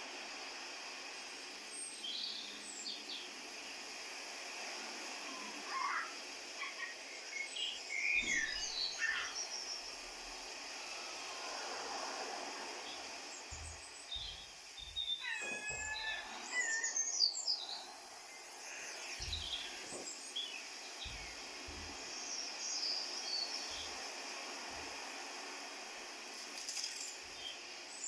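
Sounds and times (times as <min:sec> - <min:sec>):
steady background hiss: 0:00.0 - 0:28.0
birds chirping and trilling: 0:01.7 - 0:03.4, 0:05.6 - 0:11.4, 0:12.6 - 0:24.9, 0:26.6 - 0:28.0
soft low thumps: 0:12.9 - 0:16.6, 0:18.0 - 0:24.0.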